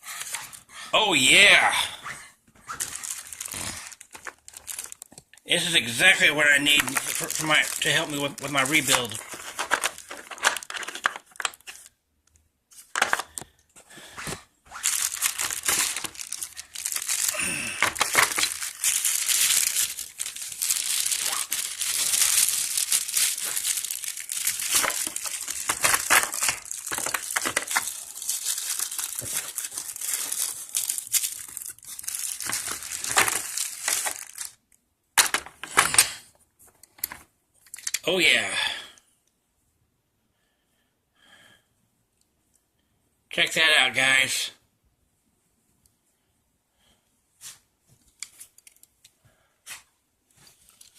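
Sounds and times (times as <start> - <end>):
plastic packaging crinkling: 2.7 - 11.9, 14.7 - 34.6, 37.0 - 38.0, 48.1 - 48.9, 50.4 - 50.9.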